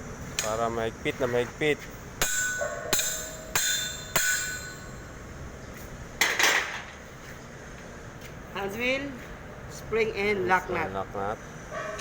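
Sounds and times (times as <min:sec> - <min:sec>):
metal-on-metal strikes: 0:02.2 - 0:05.1.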